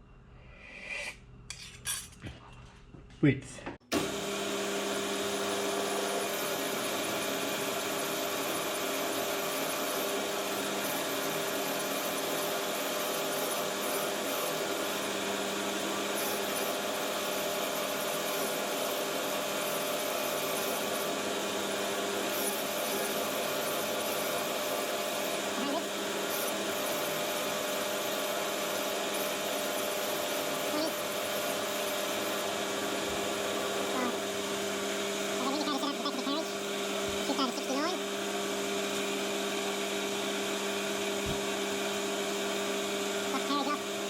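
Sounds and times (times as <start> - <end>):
lathe cutter scraping metal: 5.1 - 38.1.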